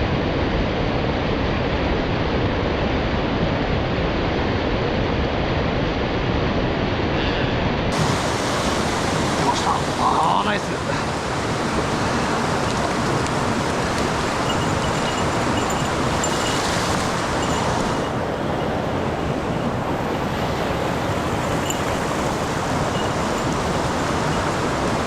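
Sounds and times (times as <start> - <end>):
mountain stream rushing: 7.9 - 25.0.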